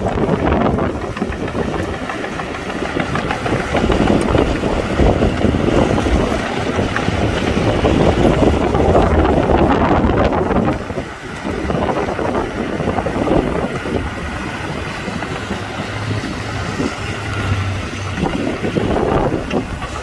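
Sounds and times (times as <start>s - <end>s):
diesel engine rough rumble: 0.0s - 20.0s.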